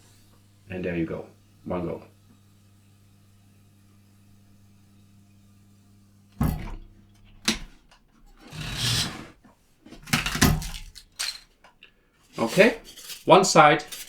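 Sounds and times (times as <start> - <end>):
foam cutter humming: 0.0 - 9.4
foam rustling scrape: 8.4 - 9.4, 12.2 - 14.0.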